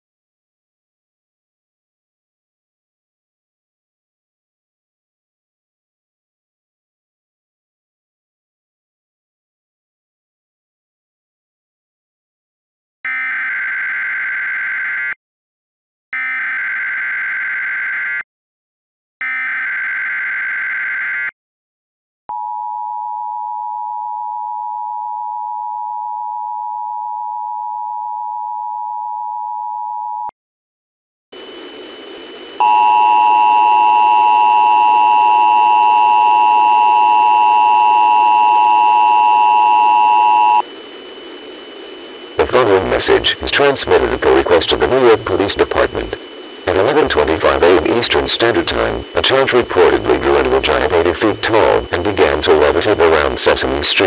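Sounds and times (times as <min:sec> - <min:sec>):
two-tone attention signal: 0:22.3 - 0:30.3, 0:32.6 - 0:40.6
hiss with high whine: 0:40.7 - 0:54.0.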